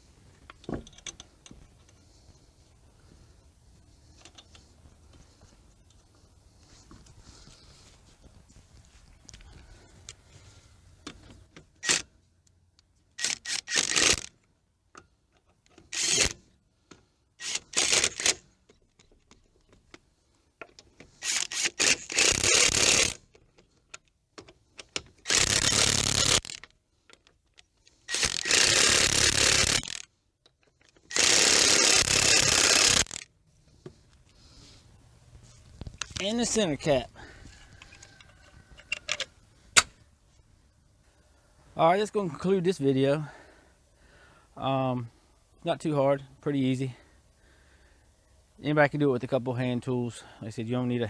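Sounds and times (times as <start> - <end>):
power tool tightening lug nuts: 11.0 - 12.1, 13.2 - 14.4, 15.7 - 16.5, 17.4 - 18.6, 20.8 - 23.5, 24.5 - 26.8, 27.9 - 30.2, 30.8 - 33.3, 36.0 - 40.0.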